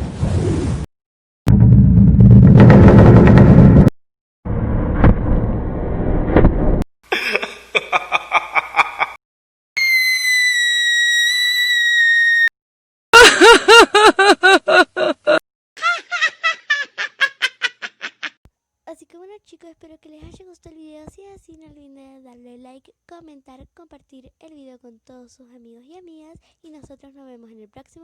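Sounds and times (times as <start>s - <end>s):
noisy rumbling with knocks: 1.5s - 3.9s, 4.5s - 6.8s.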